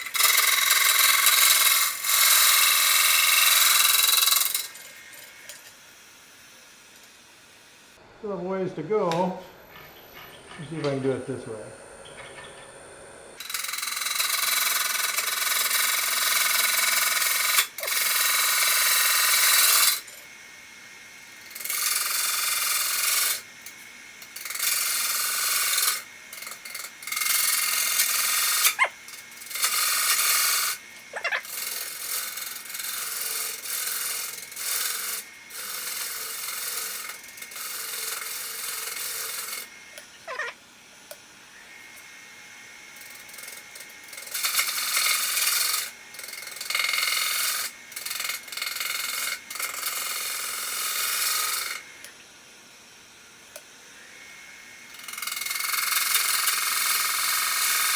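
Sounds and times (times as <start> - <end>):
lathe tool cutting wood: 0.0 - 5.4, 13.4 - 20.1, 21.4 - 23.5, 24.2 - 40.6, 42.9 - 52.0.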